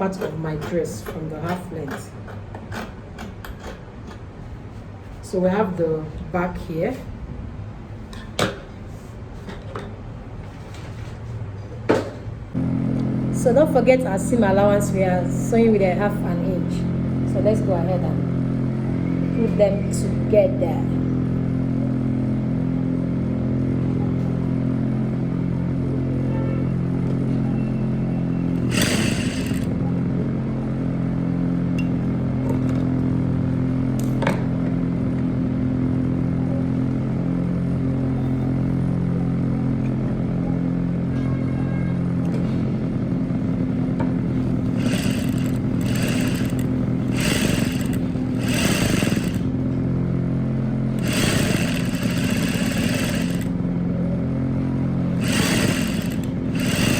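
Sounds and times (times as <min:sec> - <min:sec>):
rustling and scraping: 0:10.4 - 0:11.8
electric sewing machine running: 0:28.5 - 0:29.8, 0:44.5 - 0:49.7, 0:50.9 - 0:53.6, 0:55.1 - 0:56.9.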